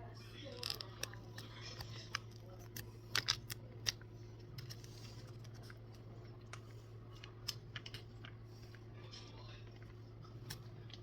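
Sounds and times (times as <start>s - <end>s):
low appliance hum: 0.0s - 11.0s.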